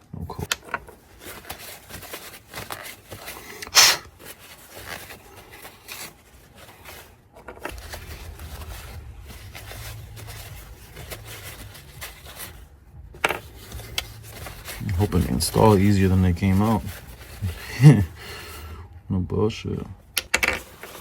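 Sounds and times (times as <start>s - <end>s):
low steady hum: 0.0s - 21.0s
clicks and scrapes of parts: 13.2s - 15.8s, 20.2s - 21.0s.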